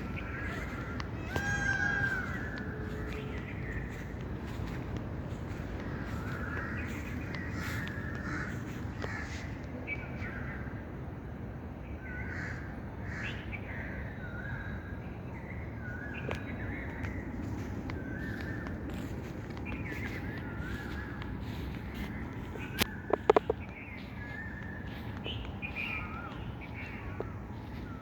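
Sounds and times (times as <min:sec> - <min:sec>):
crows cawing: 0:00.0 - 0:09.6, 0:12.1 - 0:13.4.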